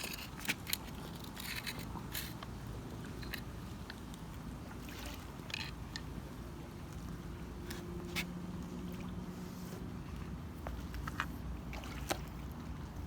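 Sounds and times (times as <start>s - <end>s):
cable scraping and rustling: 0.0s - 4.2s.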